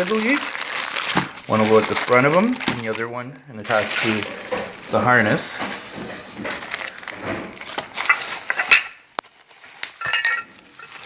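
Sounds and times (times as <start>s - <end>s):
rustling: 0.0s - 11.0s.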